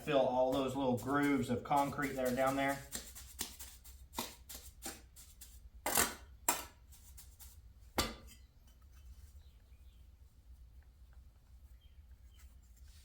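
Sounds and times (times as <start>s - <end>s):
trowel scraping mortar: 0.0s - 7.5s.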